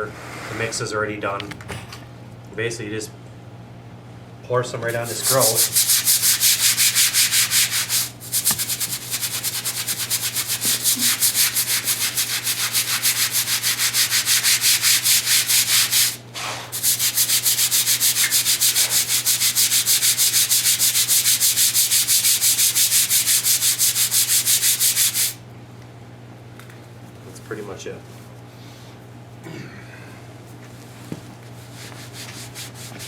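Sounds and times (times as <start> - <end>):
scrubbing grout on tile floor: 4.9 - 25.4, 31.7 - 33.0.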